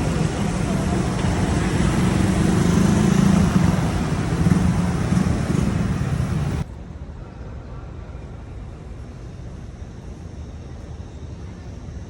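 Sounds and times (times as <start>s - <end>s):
vehicle engine running: 0.0s - 6.6s
road noise: 0.0s - 11.9s.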